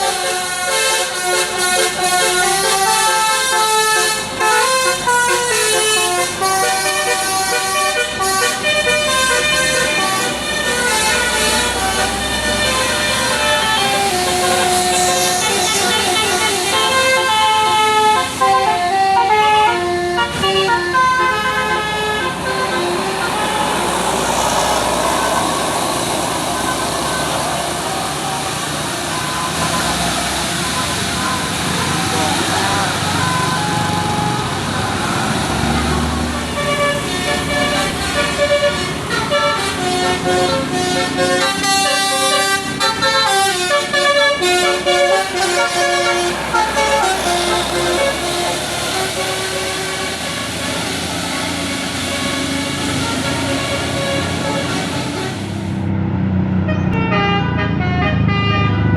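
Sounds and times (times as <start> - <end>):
bus musical horn melody: 0.0 - 55.9, 56.6 - 58.9
engine and road noise: 0.0 - 58.9.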